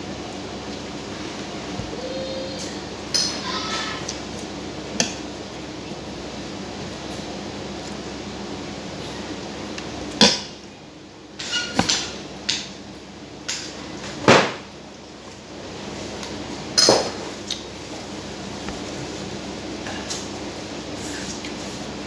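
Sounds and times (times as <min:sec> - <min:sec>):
utensils clinking against dishes: 0:02.6 - 0:04.1, 0:11.4 - 0:12.6.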